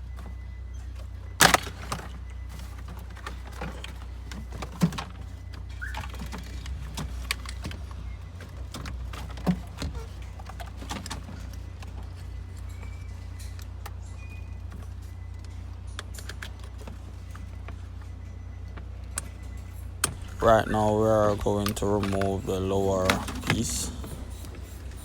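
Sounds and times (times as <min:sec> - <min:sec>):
steady low hum: 0:17.0 - 0:25.0.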